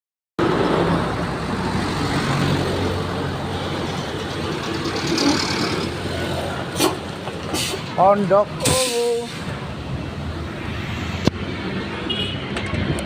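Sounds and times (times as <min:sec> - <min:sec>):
bus engine running: 0:00.4 - 0:10.6
road traffic: 0:00.4 - 0:13.0.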